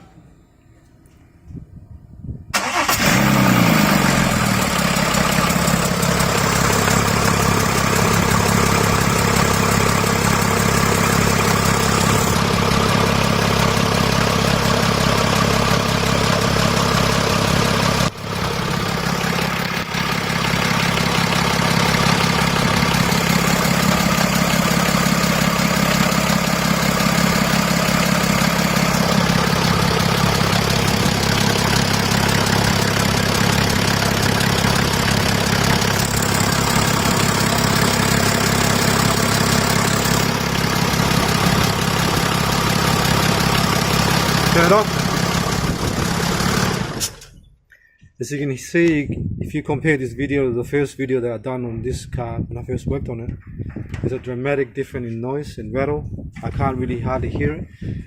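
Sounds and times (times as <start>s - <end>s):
car engine idling: 2.6s - 47.2s.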